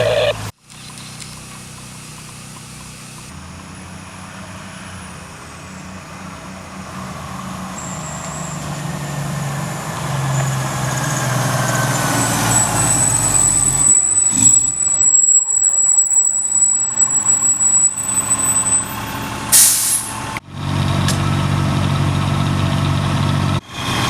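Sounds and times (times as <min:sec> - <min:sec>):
thin high whine: 0:00.0 - 0:03.3
truck engine running: 0:00.0 - 0:24.0.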